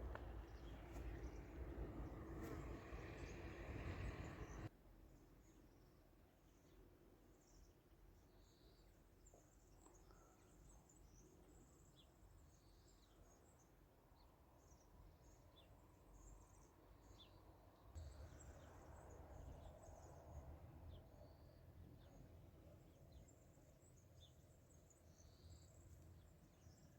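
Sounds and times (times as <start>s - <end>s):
low rumble: 0.0s - 4.7s, 18.0s - 22.0s
small birds chirping: 0.0s - 4.7s, 7.4s - 26.9s.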